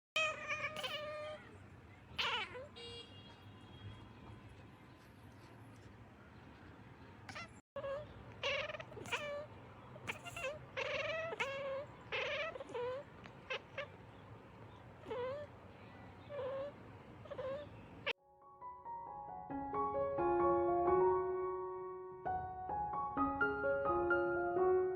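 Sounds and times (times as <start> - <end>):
cats meowing: 0.2 - 4.2, 7.3 - 18.2.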